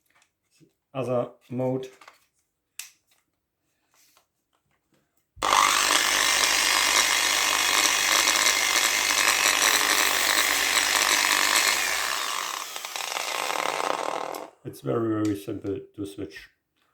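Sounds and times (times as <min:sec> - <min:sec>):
power sander running: 0:05.4 - 0:14.5.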